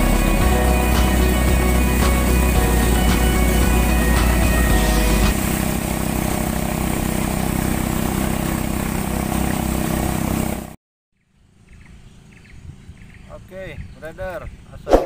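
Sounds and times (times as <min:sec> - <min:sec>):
music: 0:00.0 - 0:05.4
small boat motor running: 0:00.0 - 0:10.8.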